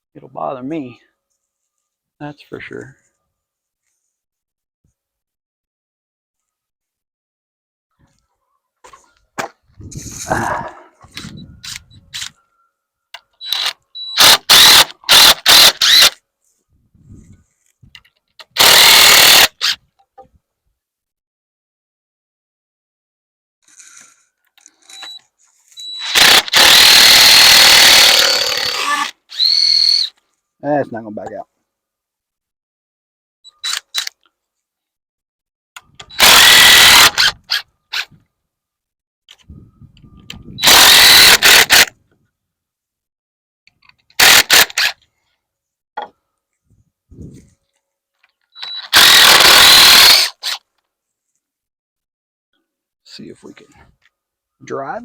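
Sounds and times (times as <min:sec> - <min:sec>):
power drill driving a screw: 0:13.4 - 0:16.2, 0:18.4 - 0:19.8, 0:25.8 - 0:30.1, 0:36.1 - 0:38.1, 0:40.6 - 0:41.9, 0:44.2 - 0:45.0, 0:48.6 - 0:50.6.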